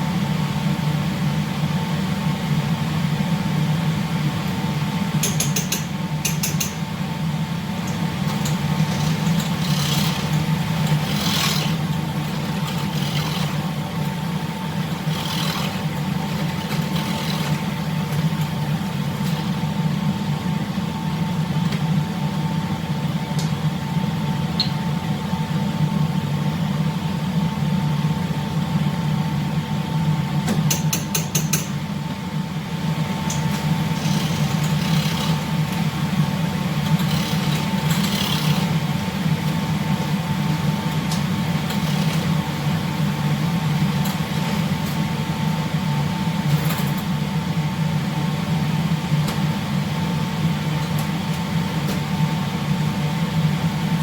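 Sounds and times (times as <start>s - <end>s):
constant whine: 0.0s - 30.7s.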